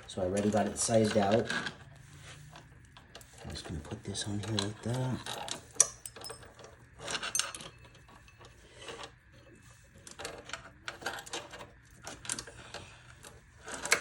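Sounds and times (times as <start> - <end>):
metal chain links clicking and rattling: 4.5 - 8.5.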